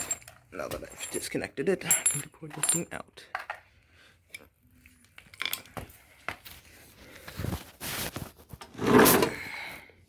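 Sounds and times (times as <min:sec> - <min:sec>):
crinkling and rustling: 0:05.0 - 0:09.4.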